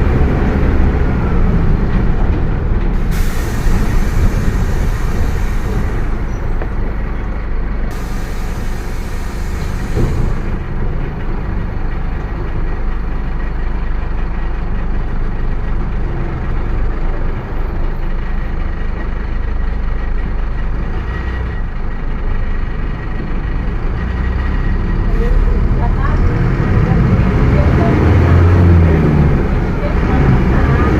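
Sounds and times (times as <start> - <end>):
bus diesel engine drone: 0.0 - 30.9
air hiss: 3.0 - 6.2, 7.9 - 10.4.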